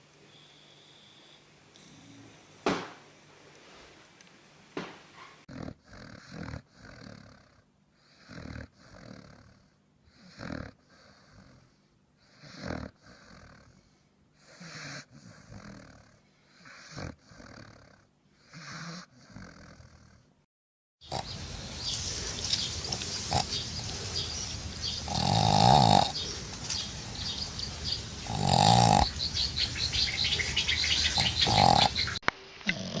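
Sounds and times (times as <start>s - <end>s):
dogs snoring and snorting: 5.2s - 20.4s, 21.0s - 33.0s
steady hiss: 21.1s - 31.2s.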